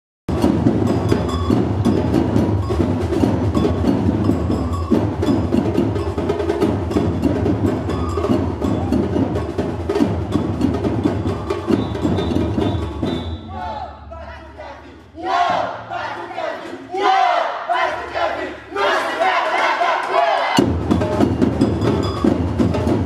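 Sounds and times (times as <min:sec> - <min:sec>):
wooden or bell-like accents: 0:00.3 - 0:09.4, 0:21.1 - 0:23.0
percussion ensemble drumming: 0:00.3 - 0:23.0
deep bass drum pulse: 0:20.6 - 0:23.0.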